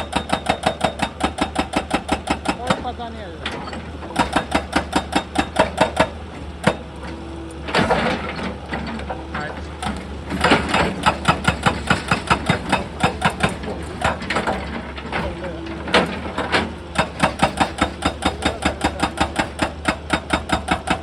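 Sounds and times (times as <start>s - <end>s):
diesel engine drone: 0.0s - 21.0s
hydraulic breaker hammer blows: 9.8s - 21.0s.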